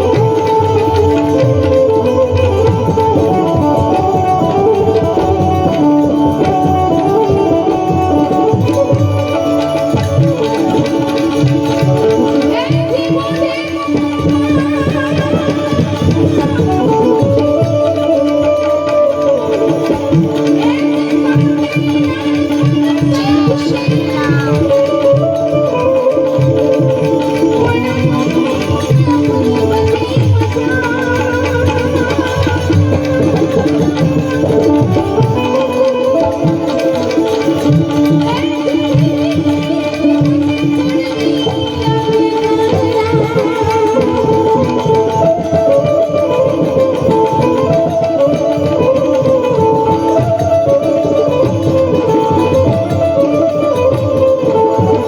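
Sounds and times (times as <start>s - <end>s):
folk music: 0.0s - 55.0s
hand drum beat: 0.0s - 55.0s
person singing: 20.4s - 45.5s.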